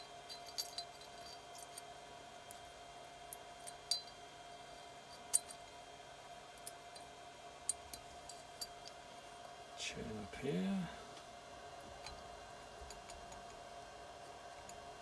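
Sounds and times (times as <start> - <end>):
metallic clinks of engine parts: 0.0 - 1.9, 3.6 - 4.2
faint steady hum: 0.0 - 15.0.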